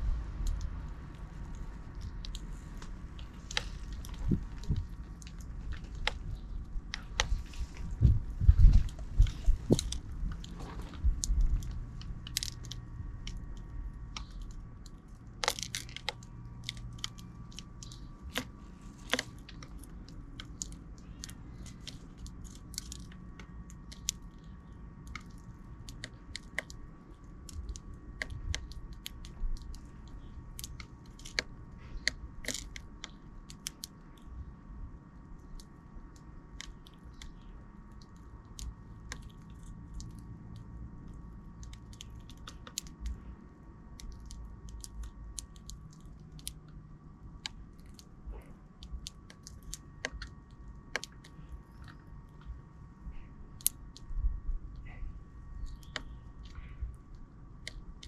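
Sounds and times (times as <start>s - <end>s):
dull low thumps: 0.0s - 12.3s
sparrows pecking: 0.0s - 34.6s, 35.2s - 58.0s.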